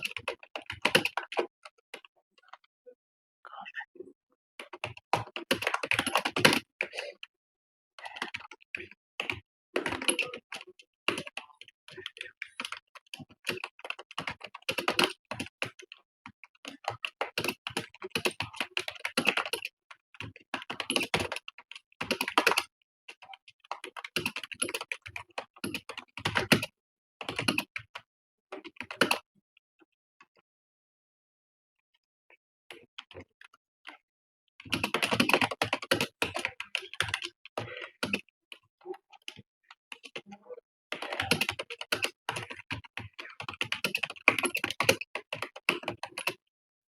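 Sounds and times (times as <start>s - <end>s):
fast keyboard typing: 0.0s - 2.1s, 4.6s - 7.1s, 8.0s - 28.0s, 28.6s - 29.2s, 34.6s - 38.6s, 39.2s - 40.3s, 40.9s - 46.4s.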